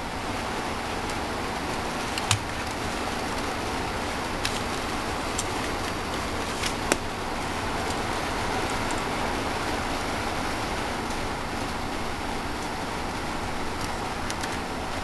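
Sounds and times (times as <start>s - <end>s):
plastic toy parts clicking: 2.0s - 3.1s, 4.4s - 7.1s.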